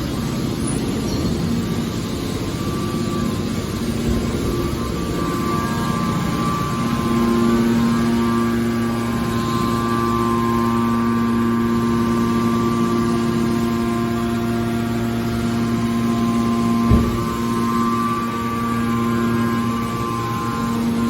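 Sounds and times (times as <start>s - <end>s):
hydraulic baler humming: 0.0s - 21.0s
short thump: 16.9s - 17.5s.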